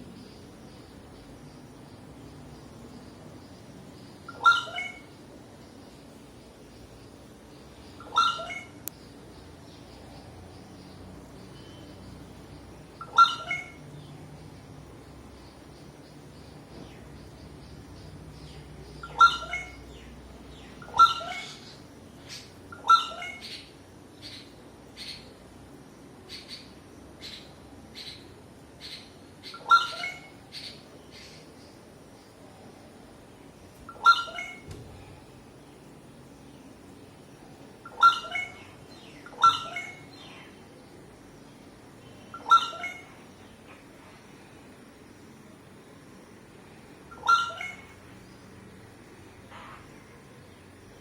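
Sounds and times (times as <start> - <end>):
faint high bird chirps: 0.0 - 6.0, 7.6 - 14.2, 15.4 - 25.4, 33.8 - 35.2, 37.8 - 41.0, 42.0 - 44.2, 47.1 - 48.6
bird calling loudly: 4.3 - 5.1, 8.0 - 8.8, 13.0 - 13.8, 19.0 - 19.8, 20.8 - 21.8, 22.7 - 25.2, 28.8 - 31.3, 33.9 - 34.7, 37.8 - 40.6, 42.3 - 43.2, 47.1 - 48.0.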